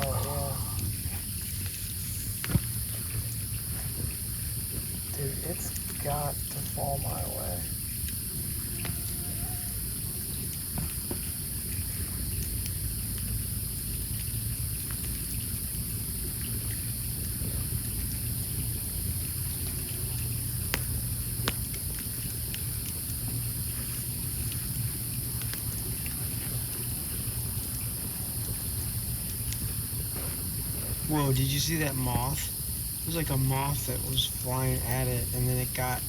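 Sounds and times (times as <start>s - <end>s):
high-pitched background hiss: 0.0s - 1.2s, 1.8s - 11.9s, 27.2s - 36.0s
campfire crackling and popping: 0.0s - 36.0s.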